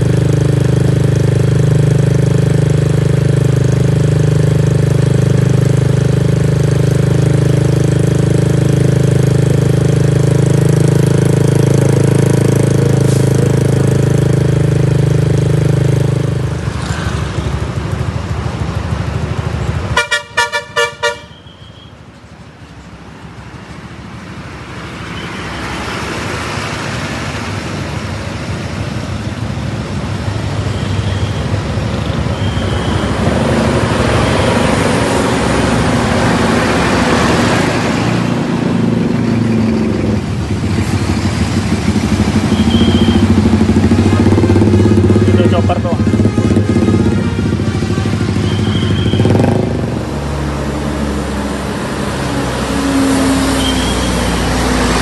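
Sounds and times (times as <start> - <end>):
diesel bus engine running: 0.0 - 55.0
road noise of vehicle: 0.0 - 55.0
bus horn short toots: 19.9 - 22.0, 42.5 - 43.4, 45.8 - 49.6, 53.2 - 54.6.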